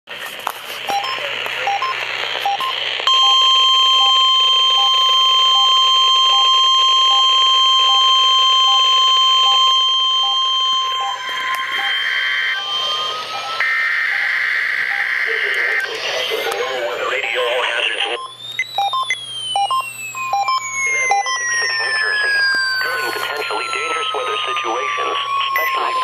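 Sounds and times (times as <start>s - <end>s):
radio hiss: 0.1s - 3.1s, 14.3s - 18.2s, 20.8s - 26.0s
faint regular beeping: 0.9s - 26.0s
steady alarm tone: 0.9s - 26.0s.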